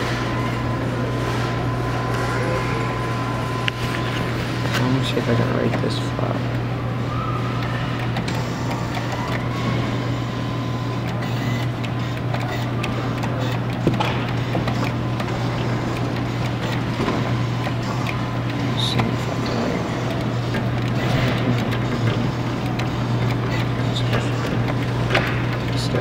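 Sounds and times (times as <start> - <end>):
claw machine electric hum: 0.0 - 26.0
small mechanical clicks: 7.5 - 26.0.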